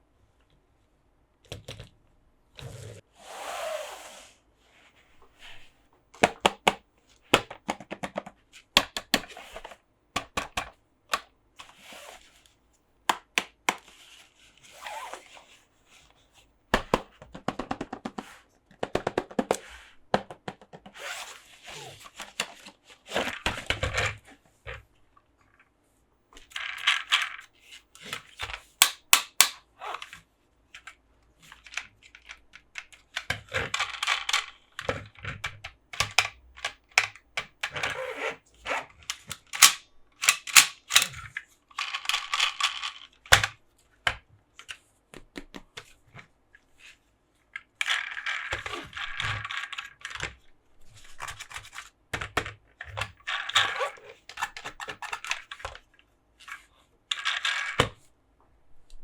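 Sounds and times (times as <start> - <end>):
hard plastic parts clicking: 6.2 - 11.8, 26.4 - 30.2, 30.8 - 38.0, 39.0 - 46.0, 51.1 - 55.9.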